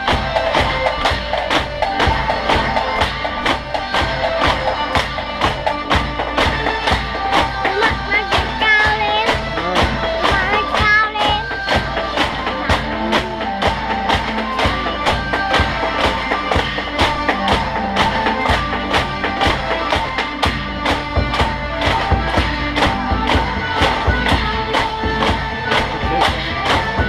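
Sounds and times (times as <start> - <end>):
background music with steady beat: 0.0 - 27.0
person singing: 7.5 - 12.6.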